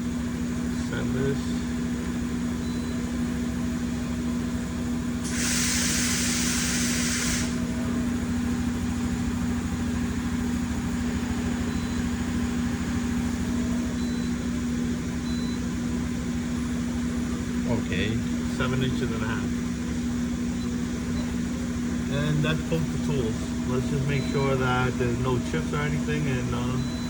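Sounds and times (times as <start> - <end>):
milling machine electrical hum: 0.0 - 27.0
hiss of spraying air: 5.2 - 7.6.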